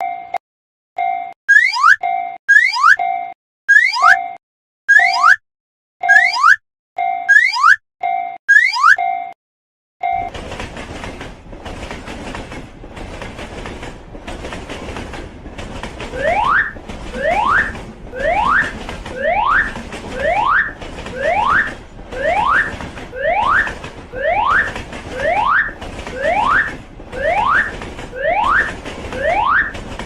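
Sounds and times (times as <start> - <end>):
passing train rushing: 10.2 - 30.0.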